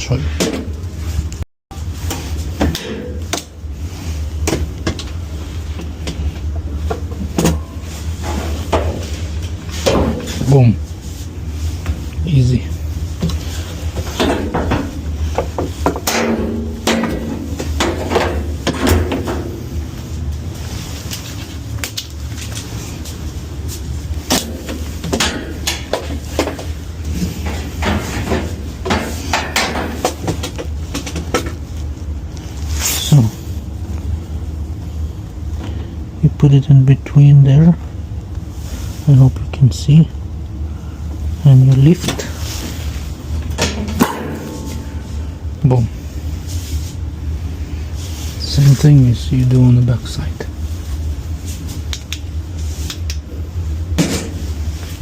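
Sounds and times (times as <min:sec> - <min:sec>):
steady low hum: 0:00.0 - 0:55.0
knocks and clicks of hard parts: 0:14.0 - 0:19.6.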